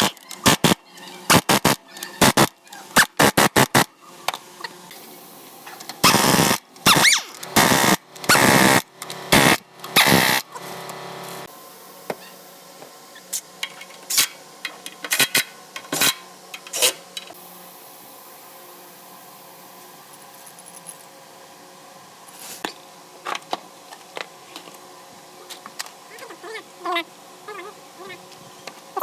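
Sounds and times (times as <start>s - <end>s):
power tool bursts: 6.0s - 10.4s.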